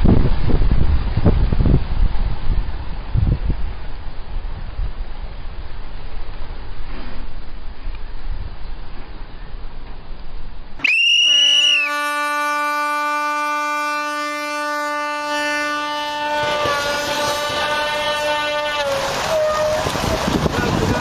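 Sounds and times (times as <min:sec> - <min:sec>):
steady wind-like noise: 0:00.0 - 0:10.8, 0:19.1 - 0:21.0
long loud horn note: 0:11.3 - 0:20.2.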